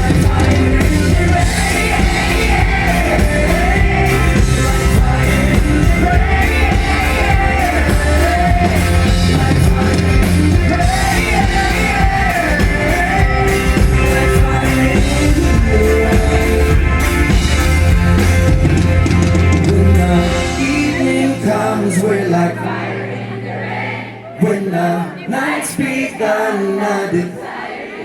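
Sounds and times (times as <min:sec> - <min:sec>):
wavering vocal melody: 0:00.0 - 0:17.0, 0:19.7 - 0:28.0
live pop-rock band music: 0:00.0 - 0:27.3.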